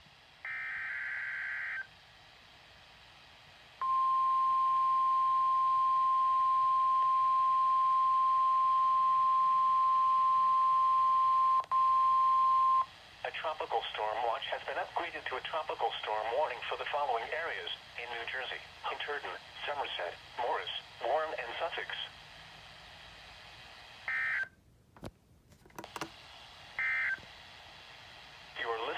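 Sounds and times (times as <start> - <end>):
radio hiss: 12.8 - 24.2, 25.8 - 28.9.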